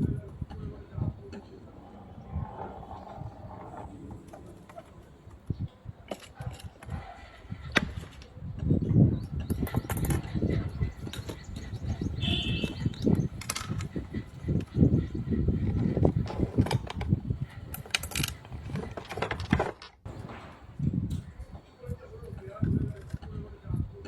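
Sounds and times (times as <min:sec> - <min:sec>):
birds fluttering and knocking: 0:03.2 - 0:20.8.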